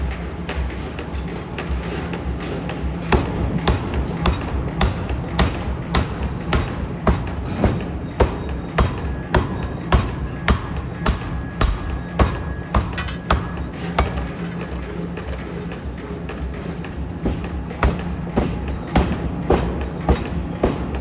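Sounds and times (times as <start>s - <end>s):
low machine hum: 0.0s - 21.0s
power hammer striking metal: 3.0s - 14.6s, 17.2s - 21.0s.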